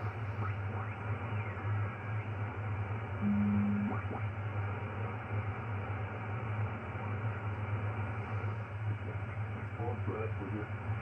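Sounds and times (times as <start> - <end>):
short low tone: 3.2 - 3.9
low hum: 3.2 - 4.1.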